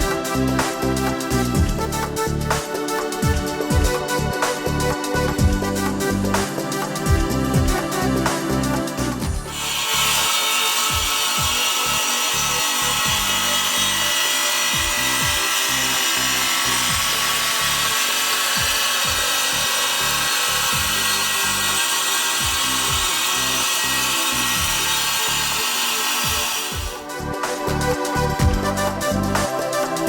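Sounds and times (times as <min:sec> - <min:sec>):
electronic music with steady beat: 0:00.0 - 0:04.6, 0:05.4 - 0:09.5, 0:26.3 - 0:30.0
power tool grinding: 0:05.7 - 0:27.2.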